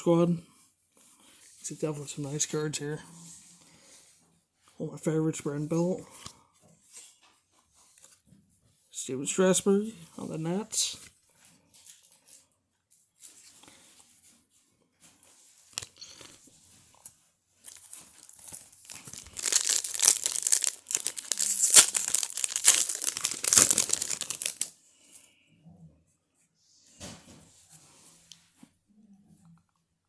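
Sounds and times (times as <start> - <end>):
cards rustling: 17.6 - 24.7
wrapper tearing and crinkling: 17.6 - 24.7.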